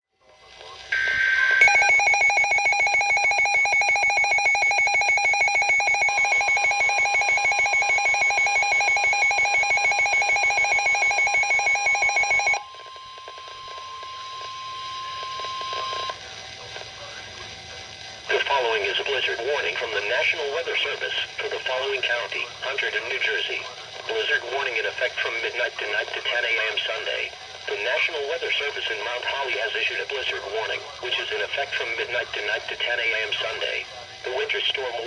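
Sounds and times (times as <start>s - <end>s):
rapidly pulsing alarm tone: 0.9s - 16.1s
data-burst tone: 0.9s - 16.2s.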